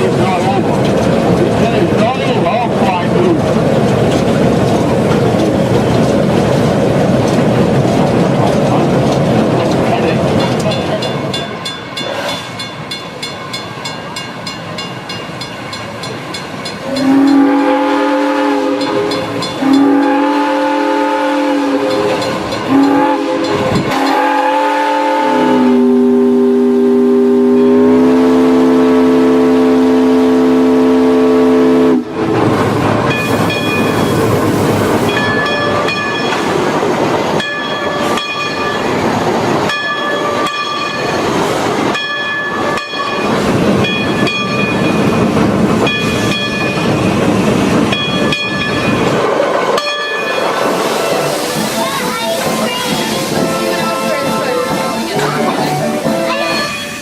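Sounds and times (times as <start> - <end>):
rapid beat of running train: 0.0 - 26.0, 31.9 - 57.0
train rattling and clanking: 0.0 - 57.0
steam locomotive chime whistle: 16.8 - 32.1, 49.7 - 57.0.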